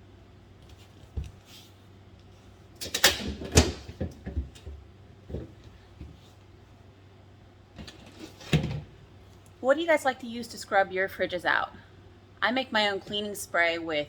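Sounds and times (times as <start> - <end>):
fridge shelves knocking and clattering: 2.8 - 6.2, 7.8 - 9.0.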